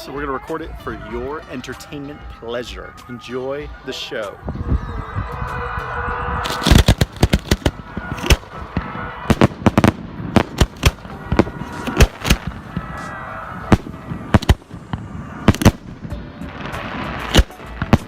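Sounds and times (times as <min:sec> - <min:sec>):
fireworks bangs and cracks: 0:06.4 - 0:18.0.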